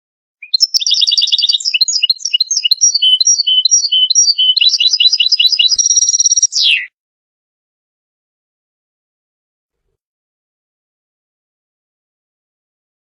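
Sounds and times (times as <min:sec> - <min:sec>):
bird twittering and trilling: 0:00.4 - 0:06.9.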